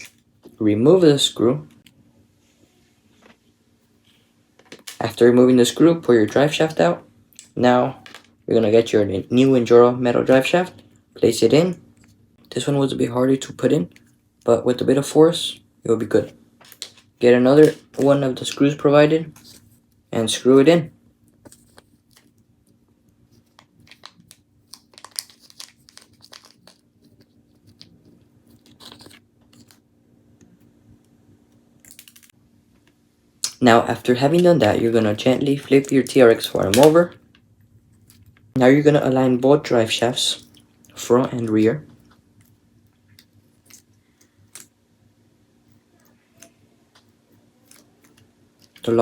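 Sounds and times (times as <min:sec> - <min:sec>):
faint steady hum: 0:00.0 - 0:49.0
hands handling plastic: 0:04.1 - 0:05.2, 0:16.6 - 0:18.6, 0:21.3 - 0:29.8, 0:34.2 - 0:38.5.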